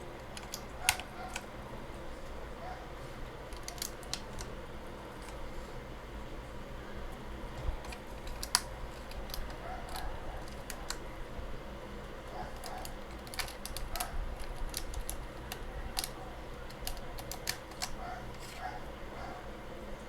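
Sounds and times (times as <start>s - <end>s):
keycaps clicking onto keyboard: 0.2s - 1.5s, 3.5s - 4.6s, 7.8s - 11.0s, 12.5s - 18.5s.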